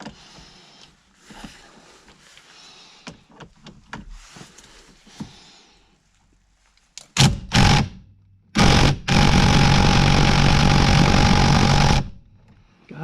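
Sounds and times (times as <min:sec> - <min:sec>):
impact wrench hammering: 0:07.2 - 0:08.0, 0:08.6 - 0:12.2.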